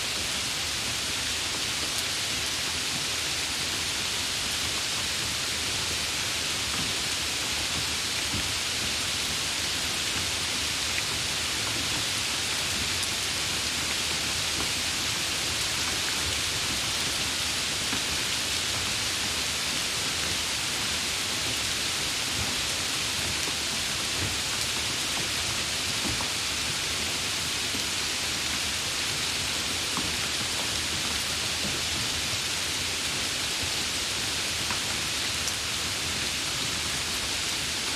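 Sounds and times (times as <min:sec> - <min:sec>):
heavy rain falling: 0:00.1 - 0:37.9.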